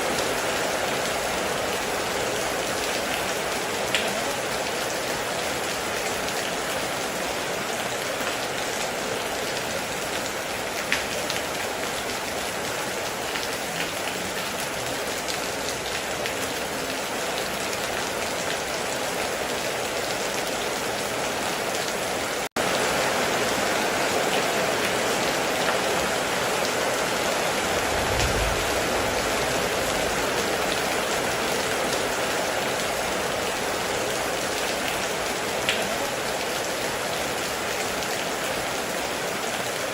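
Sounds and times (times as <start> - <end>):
heavy rain on metal roof: 0.0 - 39.9
low rumble: 27.7 - 30.2.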